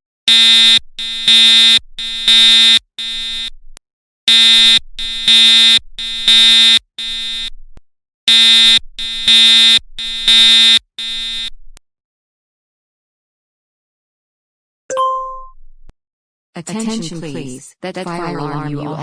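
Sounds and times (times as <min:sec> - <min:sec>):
fire alarm horn blasts: 0:00.3 - 0:03.5, 0:04.3 - 0:07.5, 0:08.3 - 0:11.5.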